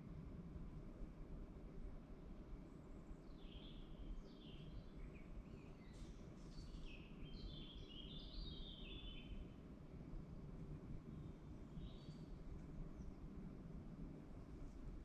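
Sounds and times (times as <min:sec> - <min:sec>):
songbird singing faintly: 0:03.2 - 0:09.6, 0:11.1 - 0:13.3.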